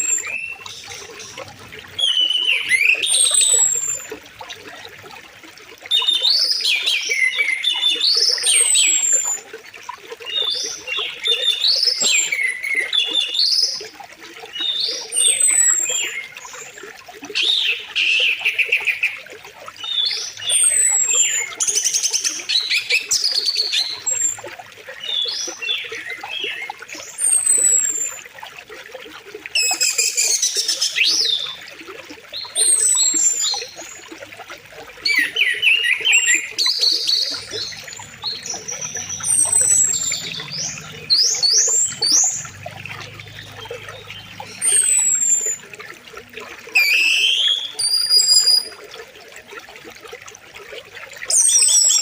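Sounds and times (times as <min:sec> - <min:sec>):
birds chirping and whistling: 0:02.0 - 0:04.1, 0:20.0 - 0:21.5, 0:27.2 - 0:28.2, 0:35.1 - 0:45.7, 0:46.8 - 0:48.7.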